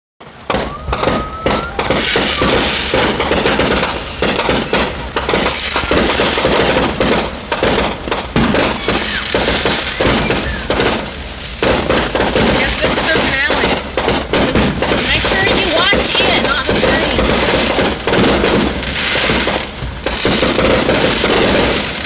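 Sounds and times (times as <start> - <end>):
fireworks bangs and crackling: 0.2 - 22.0.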